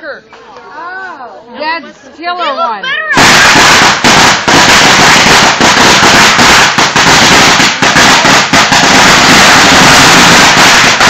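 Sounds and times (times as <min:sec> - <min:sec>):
firecrackers going off: 0:03.1 - 0:11.0.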